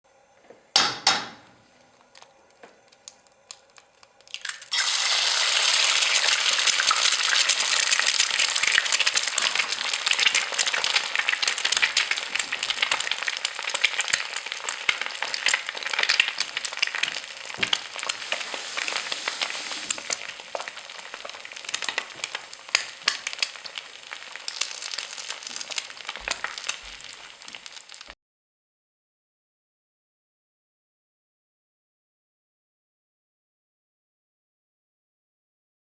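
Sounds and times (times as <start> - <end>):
eggs sizzling in a pan: 2.1 - 28.2.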